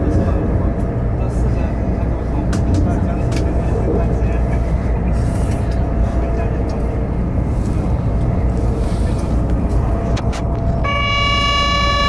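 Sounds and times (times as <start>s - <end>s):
low engine rumble: 0.0s - 12.0s
steady pitched tone: 9.8s - 12.0s.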